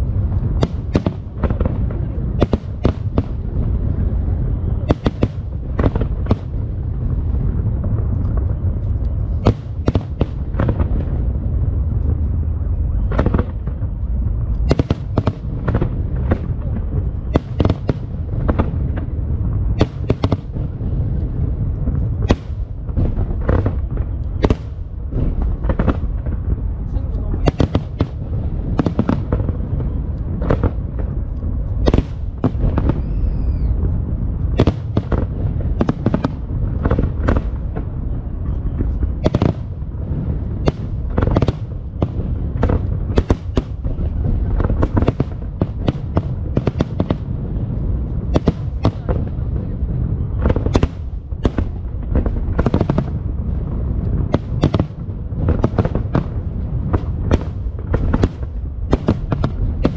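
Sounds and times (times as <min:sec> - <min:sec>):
firework cracks and booms: 0:00.0 - 0:59.9
low rumble of bursting shells: 0:00.0 - 0:59.9
rising firework whistle: 0:32.7 - 0:34.0.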